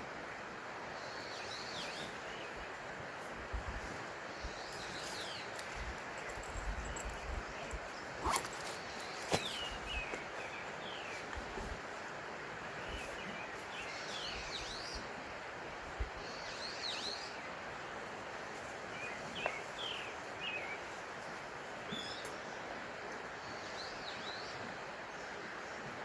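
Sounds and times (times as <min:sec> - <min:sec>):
small birds chirping: 0:01.0 - 0:11.8, 0:12.6 - 0:15.2, 0:16.2 - 0:22.7.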